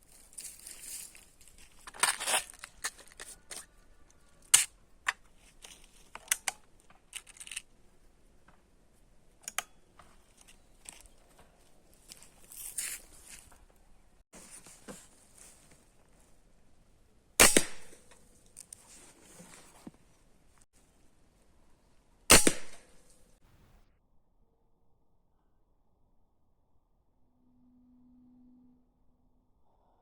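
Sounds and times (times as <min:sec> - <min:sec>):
rustling: 0:00.0 - 0:04.5, 0:10.0 - 0:13.8, 0:14.4 - 0:16.4, 0:18.0 - 0:20.9.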